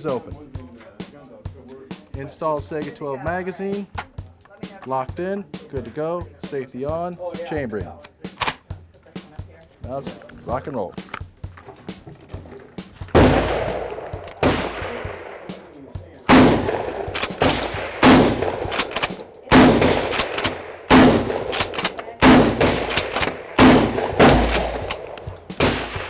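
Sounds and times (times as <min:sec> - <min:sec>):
shotgun shots with echo: 0:13.1 - 0:26.0.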